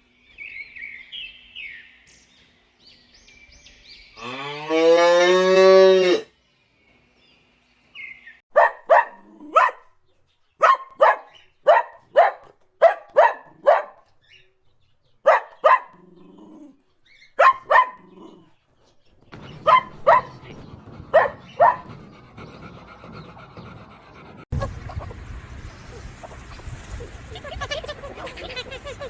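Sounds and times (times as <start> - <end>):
dog barking: 8.5 - 10.0, 10.6 - 14.1, 15.2 - 18.5, 19.3 - 22.3.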